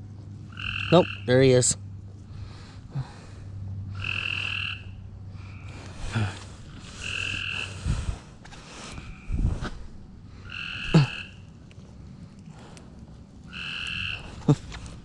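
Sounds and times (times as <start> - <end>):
steady low hum: 0.0 - 15.0
frog buzzy calls: 0.5 - 1.6, 3.9 - 8.2, 10.4 - 11.6, 13.4 - 14.8.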